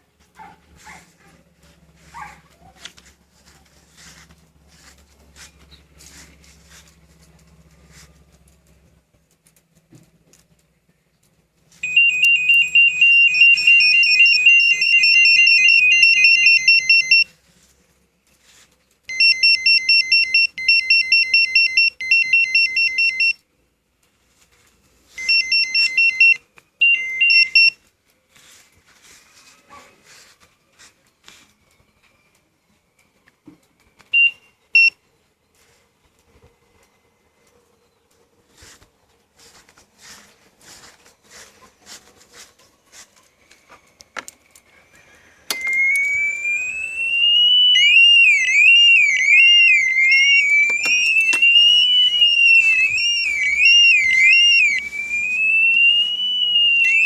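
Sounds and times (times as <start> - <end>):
motorcycle alarm beeping: 11.8 - 17.3, 19.1 - 23.4, 25.2 - 27.8, 34.1 - 35.0, 45.4 - 57.0.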